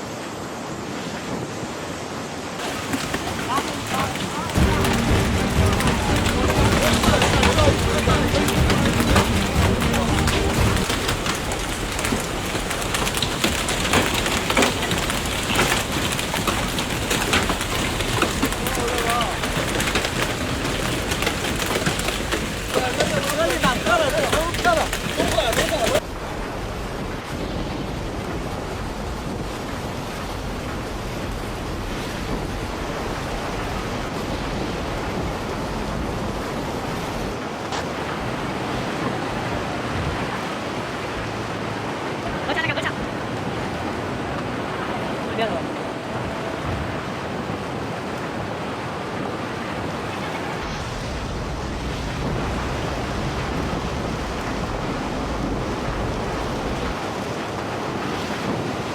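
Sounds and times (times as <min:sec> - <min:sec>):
heavy rushing water: 0:00.0 - 0:58.9
short crackles: 0:02.6 - 0:26.0.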